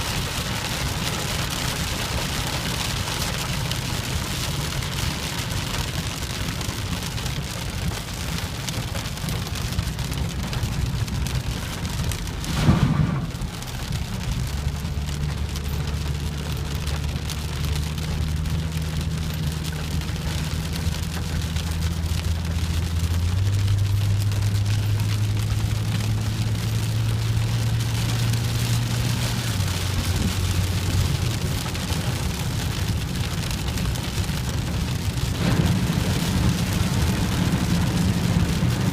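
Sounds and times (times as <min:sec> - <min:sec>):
heavy rain falling: 0:00.0 - 0:38.9
whoosh: 0:12.4 - 0:13.6.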